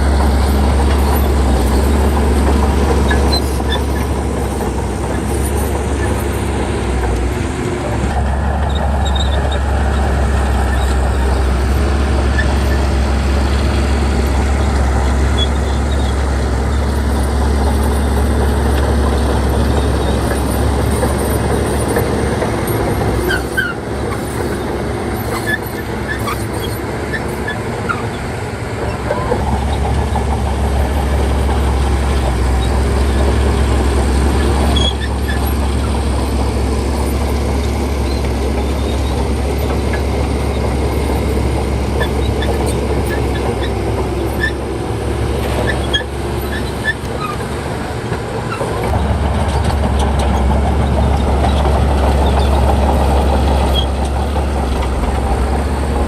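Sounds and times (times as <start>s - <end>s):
heavy diesel engine under load: 0.0s - 56.0s
short high squeaks: 23.2s - 28.2s.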